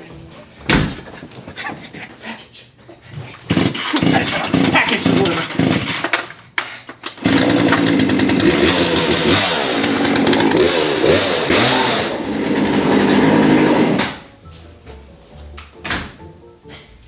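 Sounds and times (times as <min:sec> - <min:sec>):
chainsaw running and revving: 0:03.5 - 0:06.0, 0:07.2 - 0:14.2.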